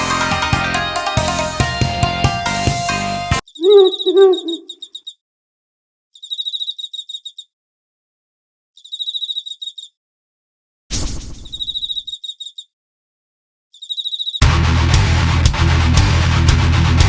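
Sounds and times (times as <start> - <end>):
high rapid chirping: 3.4 - 5.0
owl hooting: 3.4 - 5.1.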